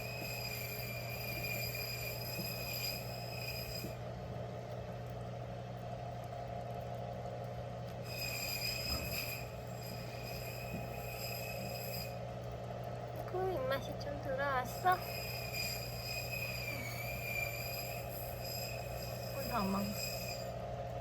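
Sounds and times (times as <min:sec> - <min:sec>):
high-pitched whine: 0:00.0 - 0:04.0, 0:08.0 - 0:12.3, 0:13.5 - 0:21.0
low machine hum: 0:00.0 - 0:21.0.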